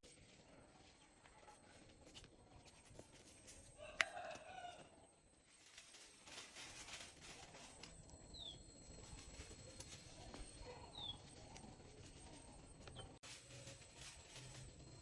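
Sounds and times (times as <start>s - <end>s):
faint outdoor ambience: 0.0s - 15.0s
bird chirping: 8.0s - 13.2s.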